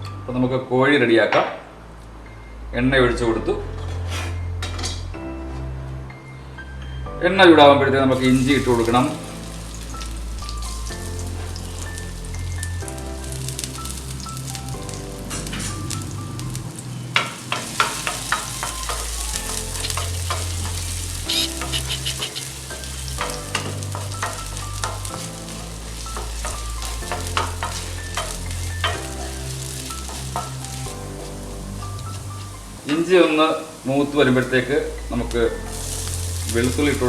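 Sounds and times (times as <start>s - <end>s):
soft background music: 0.0s - 37.0s
sizzling in hot oil: 8.1s - 37.0s
spoon scraping a pan: 17.2s - 33.0s.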